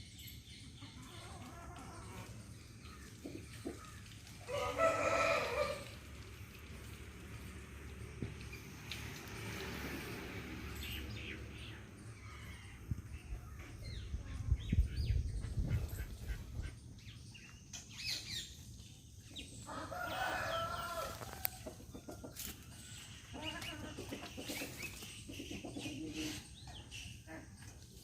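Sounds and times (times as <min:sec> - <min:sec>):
rooster crowing: 0:04.5 - 0:05.9, 0:19.7 - 0:21.6.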